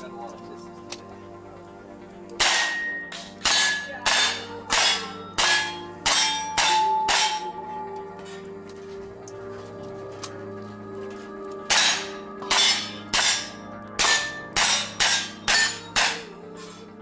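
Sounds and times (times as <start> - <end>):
steel plate target ringing: 2.4 - 7.8, 11.7 - 16.4.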